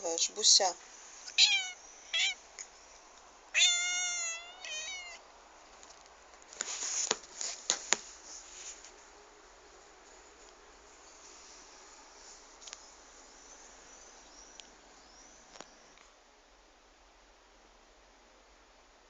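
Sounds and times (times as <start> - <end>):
cat meowing: 1.4 - 2.4, 3.5 - 5.2.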